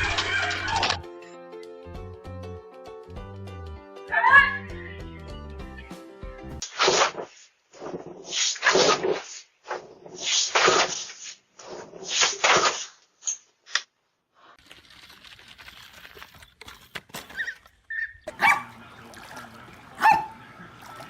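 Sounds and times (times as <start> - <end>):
dog barking: 4.1 - 4.7, 18.3 - 18.8, 20.0 - 20.4.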